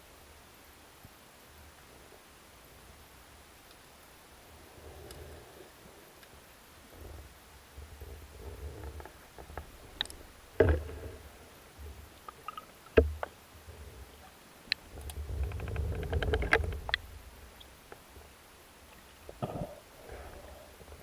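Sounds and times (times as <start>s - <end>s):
low underwater rumbling: 7.8s - 14.2s, 14.9s - 17.6s
underwater crackles: 7.8s - 18.1s
sharp muffled underwater knocks: 13.0s - 13.3s.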